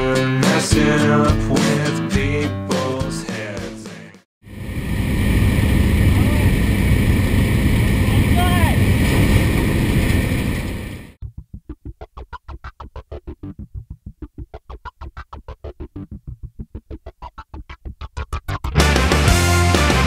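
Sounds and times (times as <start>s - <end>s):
loud dense music: 18.8s - 20.0s.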